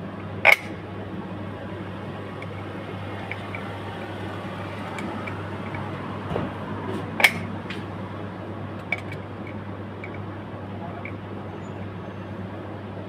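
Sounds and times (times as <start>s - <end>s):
tools clicking: 0.4s - 0.8s, 2.4s - 3.7s, 4.8s - 5.9s, 7.2s - 7.5s, 8.8s - 10.2s.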